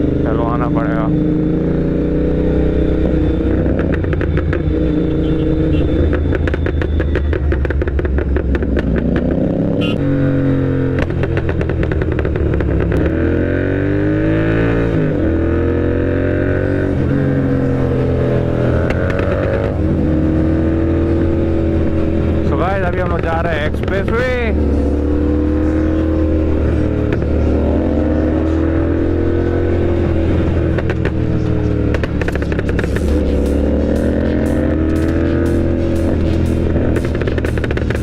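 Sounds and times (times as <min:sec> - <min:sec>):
motorcycle engine accelerating: 0:00.0 - 0:38.0
sharp exhaust crackles: 0:30.6 - 0:38.0.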